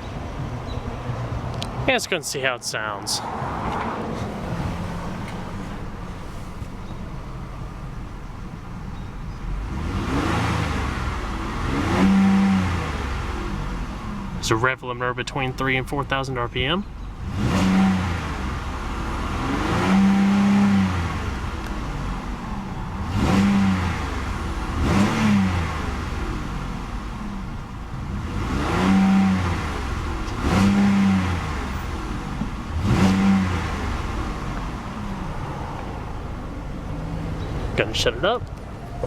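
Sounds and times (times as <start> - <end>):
car engine revving: 0.0 - 39.0.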